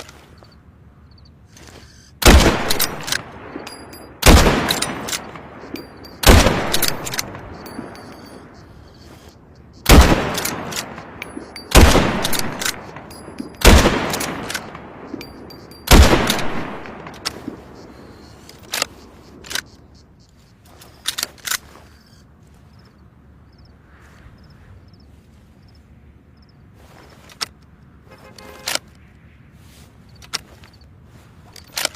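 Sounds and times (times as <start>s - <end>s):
rifle shots echoing: 2.2s - 9.2s, 9.8s - 19.8s.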